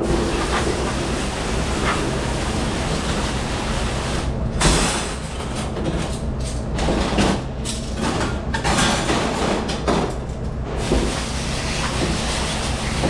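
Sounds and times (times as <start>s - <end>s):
dish machine humming: 0.0s - 13.0s
dishes and racks clattering: 4.6s - 13.0s.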